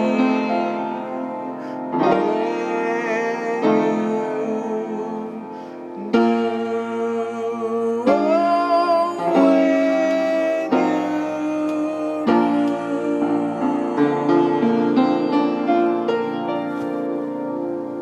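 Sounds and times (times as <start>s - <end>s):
instrumental song with piano: 0.0s - 18.0s.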